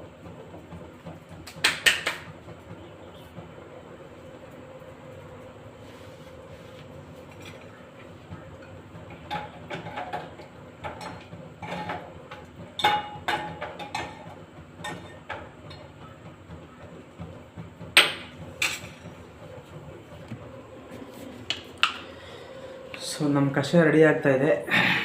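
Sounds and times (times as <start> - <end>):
steady low hum: 2.2 - 25.0
metal utensils and pots clinking: 8.6 - 12.1, 12.8 - 15.8.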